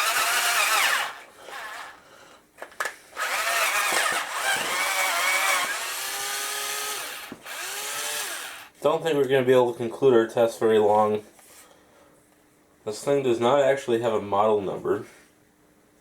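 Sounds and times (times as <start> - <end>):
cordless drill motor whining: 0.0 - 2.0, 3.2 - 8.7
drill click: 3.2 - 8.8.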